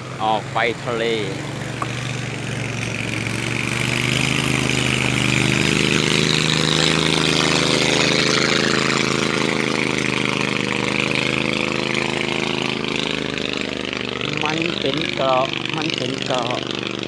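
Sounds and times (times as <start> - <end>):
engine running: 0.0 - 17.0.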